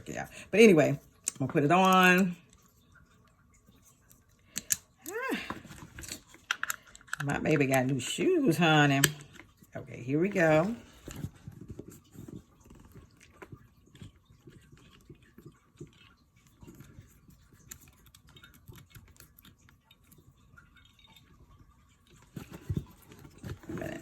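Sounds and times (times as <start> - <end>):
plastic and metal clicks and scrapes: 4.0 - 8.0.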